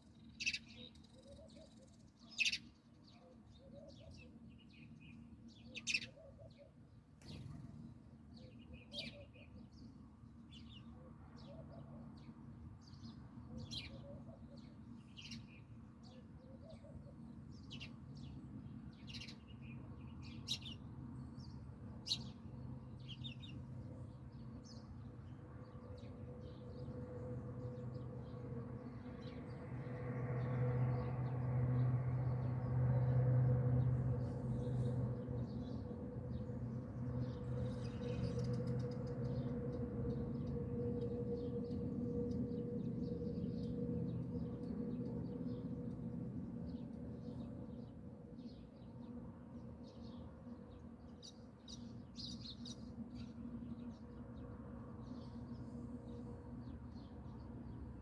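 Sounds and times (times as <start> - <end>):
small birds chirping: 0.0 - 27.0, 33.9 - 40.6, 49.8 - 58.0.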